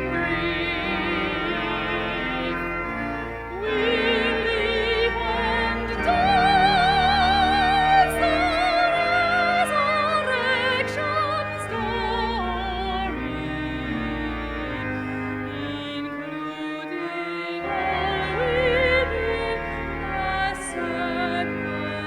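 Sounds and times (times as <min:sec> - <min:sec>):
classical singing with vibrato: 0:00.0 - 0:22.0
sustained accompanying chords: 0:00.0 - 0:22.0.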